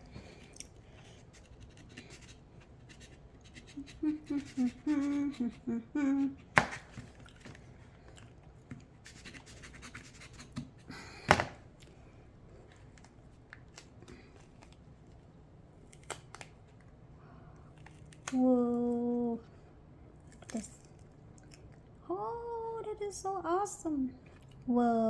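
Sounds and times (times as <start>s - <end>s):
pod shell scratching: 1.0s - 5.6s.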